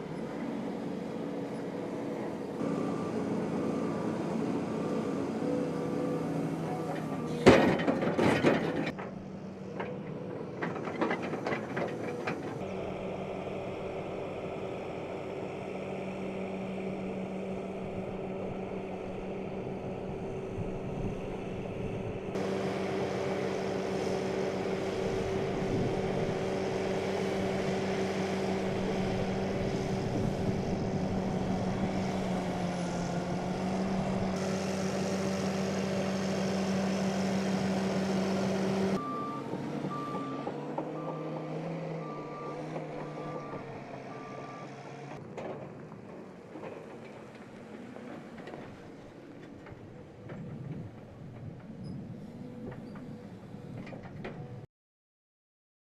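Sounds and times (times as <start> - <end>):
heavy vehicle engine humming: 0.0 - 54.6
loud knocks and clatter: 7.4 - 9.2.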